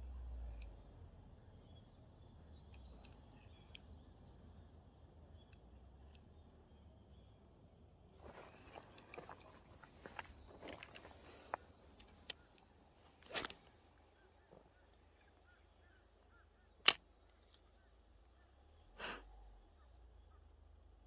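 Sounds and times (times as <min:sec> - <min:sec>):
faint small chirps: 0:01.5 - 0:20.4
sharp loud click: 0:16.8 - 0:17.0.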